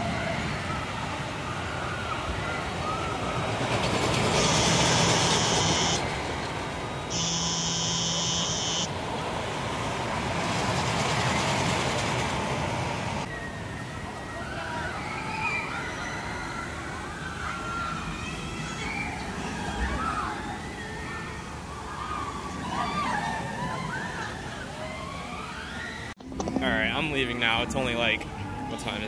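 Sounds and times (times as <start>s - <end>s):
horn blasts: 4.4s - 6.0s, 7.1s - 8.9s.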